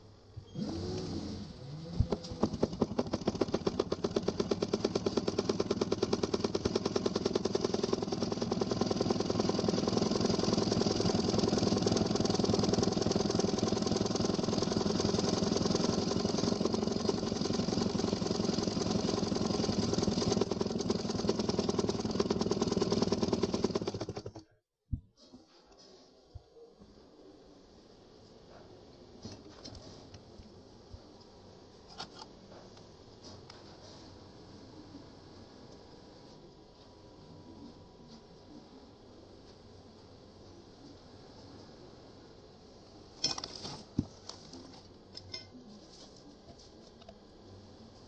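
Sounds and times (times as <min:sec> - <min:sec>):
sewing machine stitching: 0:00.5 - 0:24.6.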